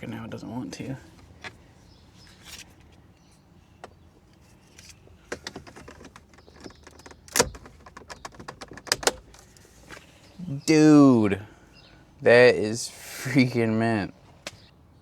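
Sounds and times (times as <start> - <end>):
plastic trim clicks and rattles: 5.3 - 9.6.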